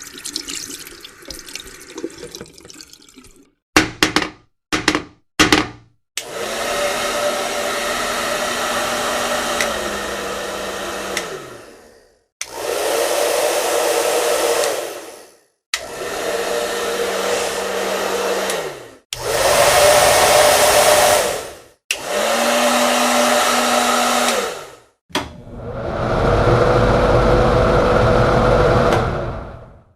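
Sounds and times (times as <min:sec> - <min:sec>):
hair dryer blowing: 0:06.2 - 0:29.8
motor winding down: 0:06.2 - 0:29.8.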